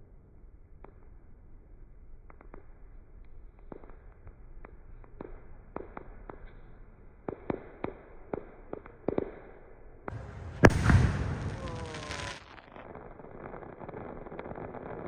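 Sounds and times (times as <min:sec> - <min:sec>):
loud firework bang with echo: 0:10.1 - 0:12.6
fireworks popping: 0:10.1 - 0:15.0.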